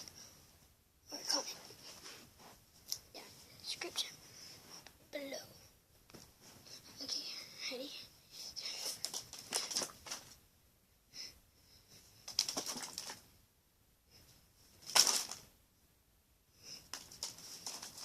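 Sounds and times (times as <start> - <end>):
cards flapping and rustling: 8.8 - 10.4, 12.2 - 13.2, 14.8 - 15.5, 16.9 - 18.0.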